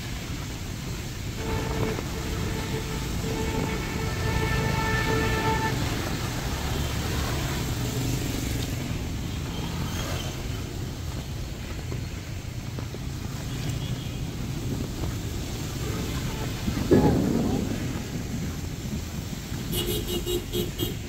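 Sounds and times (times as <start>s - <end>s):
rain hissing: 0.0s - 21.0s
vehicle engines rumbling: 0.0s - 21.0s
vehicle horn: 1.4s - 7.6s, 15.8s - 16.9s, 19.7s - 21.0s.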